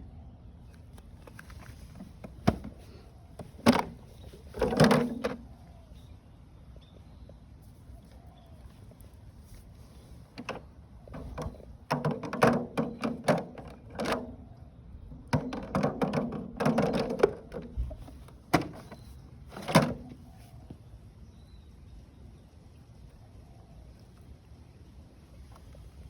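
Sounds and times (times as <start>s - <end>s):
hard plastic clattering and scraping: 1.2s - 5.5s, 9.5s - 14.5s, 15.1s - 20.2s.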